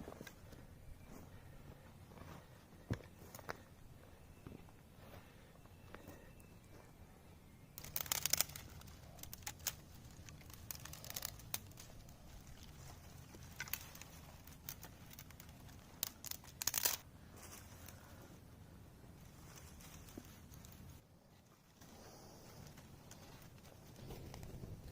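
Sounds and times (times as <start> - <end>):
crunching of leaf litter and twigs: 7.6 - 18.4, 19.0 - 24.9.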